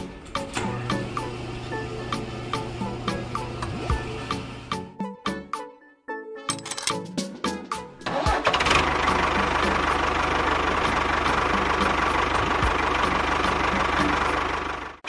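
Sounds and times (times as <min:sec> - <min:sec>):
engine chugging: 0:08.0 - 0:15.0.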